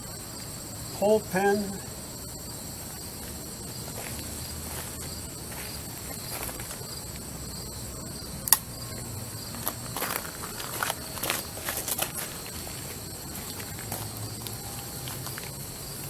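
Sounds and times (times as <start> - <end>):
crickets chirping: 0.0 - 16.0
light footsteps: 1.9 - 7.6, 8.9 - 16.0
sharp click: 8.4 - 8.7.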